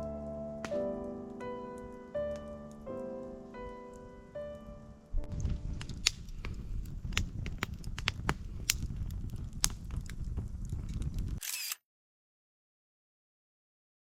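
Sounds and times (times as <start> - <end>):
campfire crackling and popping: 0.0 - 11.4
steady low rumble: 4.4 - 11.4.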